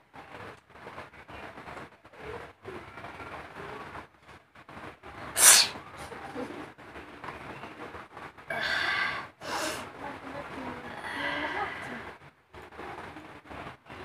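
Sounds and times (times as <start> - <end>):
woman sneezing: 5.4 - 5.8
breathy sound: 8.5 - 9.8, 10.9 - 12.2.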